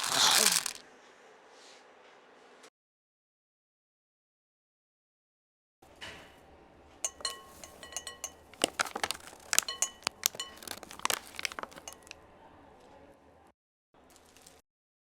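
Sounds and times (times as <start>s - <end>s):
glass clinking: 7.0s - 12.2s.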